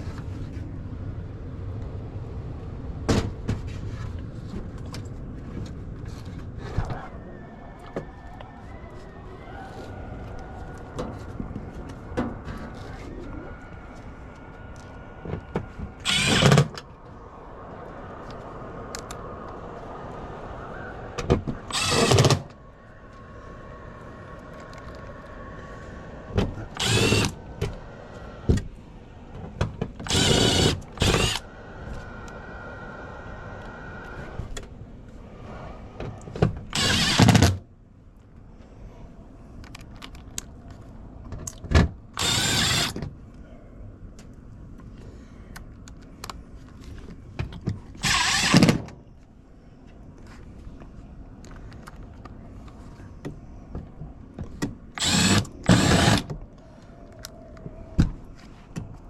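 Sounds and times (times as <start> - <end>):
power drill bursts: 16.0 - 16.8, 21.7 - 22.5, 26.7 - 27.4, 30.0 - 31.5, 36.7 - 37.6, 42.2 - 43.0, 48.0 - 48.8, 55.0 - 56.3.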